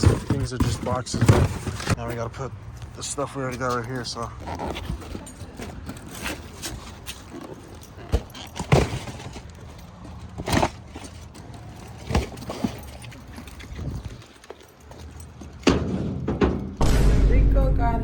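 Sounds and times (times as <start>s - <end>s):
boxes knocking and thumping: 0.0s - 2.2s, 4.4s - 14.3s, 15.0s - 16.8s.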